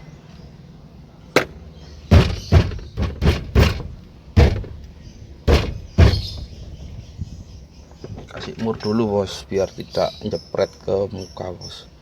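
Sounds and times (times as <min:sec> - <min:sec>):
hard knocks and thuds: 0:01.4 - 0:07.0.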